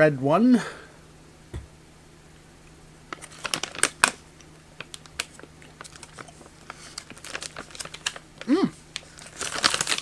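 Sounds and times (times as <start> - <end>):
plastic bag crinkling: 3.1 - 4.2, 4.8 - 10.0.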